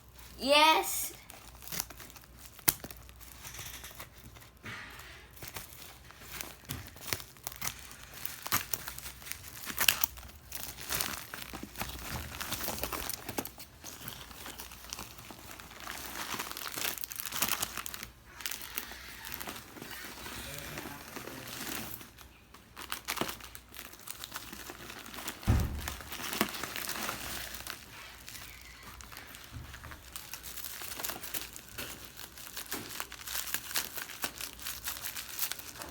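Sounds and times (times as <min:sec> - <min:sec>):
packaging crinkling and rustling: 0:01.2 - 0:35.9
dull thump: 0:25.5 - 0:26.1.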